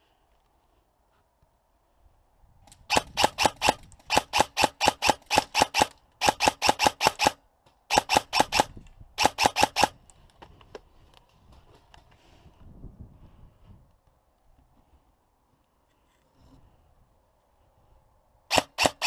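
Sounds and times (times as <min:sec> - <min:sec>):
airsoft gun firing shots: 0:02.8 - 0:10.0, 0:18.5 - 0:19.0.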